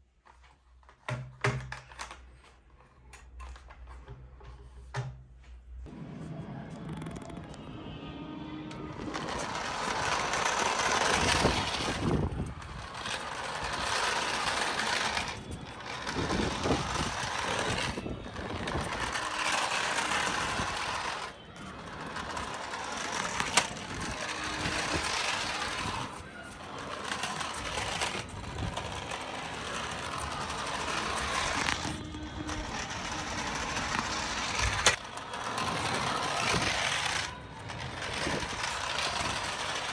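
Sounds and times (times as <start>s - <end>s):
toy car motor and gears whirring: 8.8s - 39.9s.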